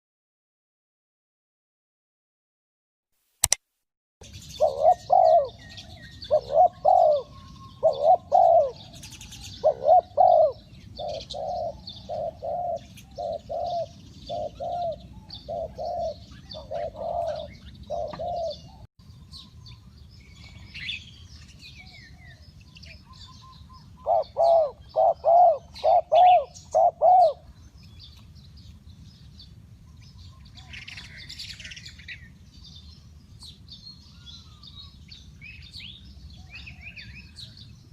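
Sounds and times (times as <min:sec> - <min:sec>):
small birds chirping: 0:04.2 - 0:37.9
dove cooing: 0:04.5 - 0:18.9, 0:22.2 - 0:27.5.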